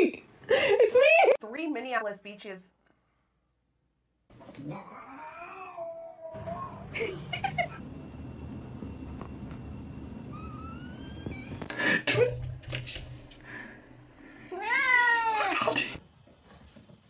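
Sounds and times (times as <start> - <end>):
cat meowing: 4.7 - 6.9, 14.5 - 15.8.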